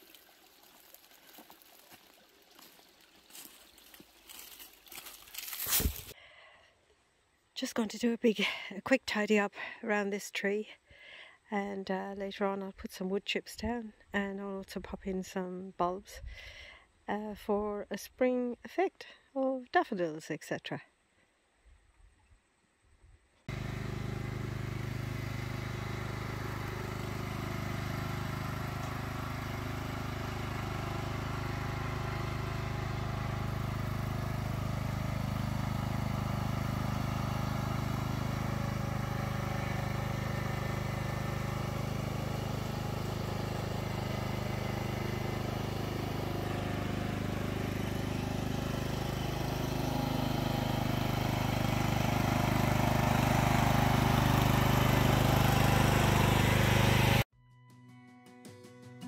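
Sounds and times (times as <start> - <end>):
small engine running: 0.0 - 6.5, 23.5 - 57.3.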